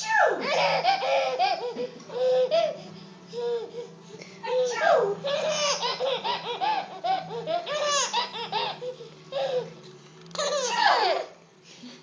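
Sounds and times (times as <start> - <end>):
baby giggling: 0.4 - 2.8, 4.5 - 9.7.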